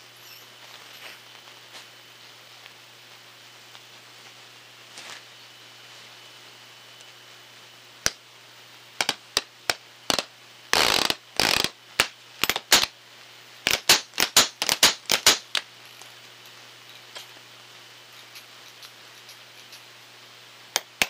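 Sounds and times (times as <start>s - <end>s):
steady hiss: 0.0s - 21.0s
sharp clicks: 13.7s - 15.6s.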